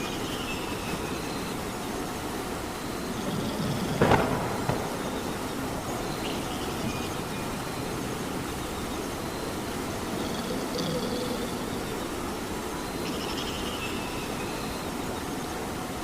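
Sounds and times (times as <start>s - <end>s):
rain hiss: 0.0s - 16.0s
sharp crack: 4.0s - 5.4s.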